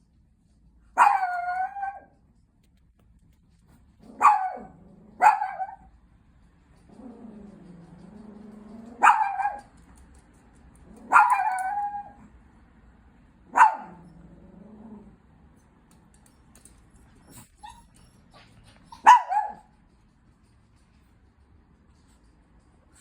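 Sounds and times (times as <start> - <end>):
dog yapping: 1.0 - 2.1, 4.1 - 5.9, 8.8 - 9.7, 11.0 - 12.3, 13.5 - 14.1, 18.9 - 19.7
dog growling: 4.0 - 5.2, 6.9 - 9.0, 13.9 - 15.3.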